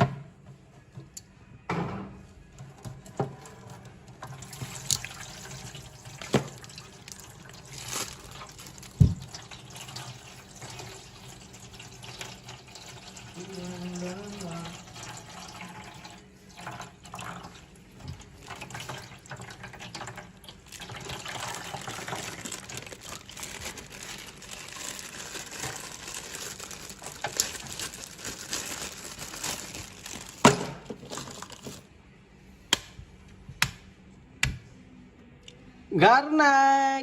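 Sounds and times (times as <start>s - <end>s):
tap water running and splashing: 4.1s - 31.7s.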